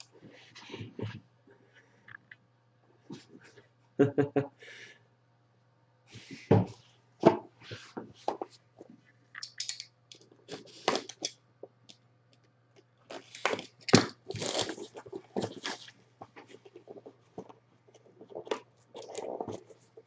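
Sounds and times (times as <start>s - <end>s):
wrappers tearing and crinkling: 13.1s - 15.9s.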